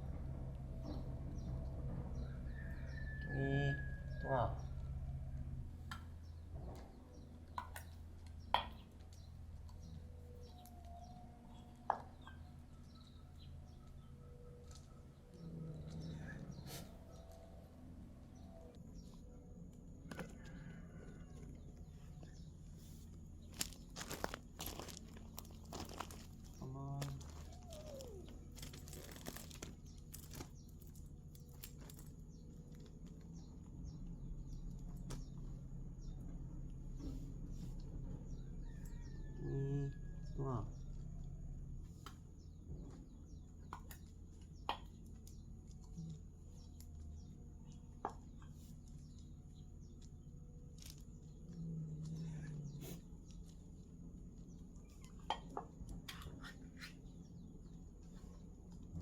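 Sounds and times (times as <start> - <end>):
small birds chirping: 0.0 - 59.0
crinkling and clicking handling: 23.0 - 33.5, 49.9 - 52.2.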